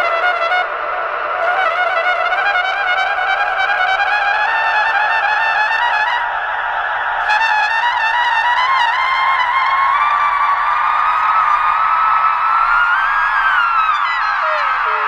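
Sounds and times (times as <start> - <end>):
trumpet through delay: 0.0 - 6.5, 7.2 - 10.3.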